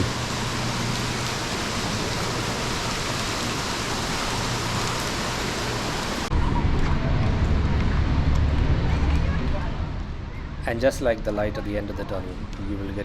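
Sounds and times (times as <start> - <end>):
waterfall roaring: 0.0 - 6.3.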